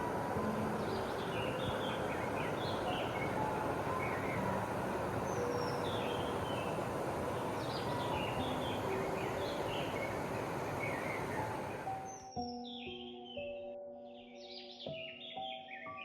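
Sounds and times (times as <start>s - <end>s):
stream rushing: 0.0s - 12.0s
birds chirping: 0.0s - 12.1s.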